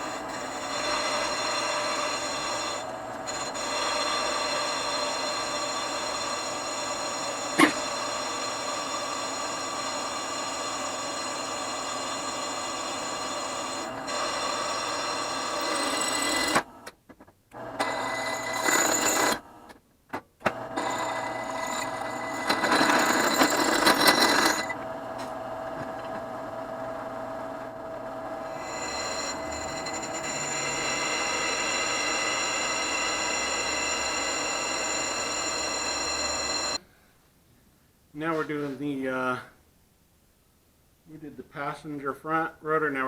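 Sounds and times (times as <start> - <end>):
drill press ringing whine: 0.0 - 16.6, 17.8 - 19.4, 20.7 - 24.8, 27.9 - 36.8
harsh cutting noise: 28.4 - 36.8.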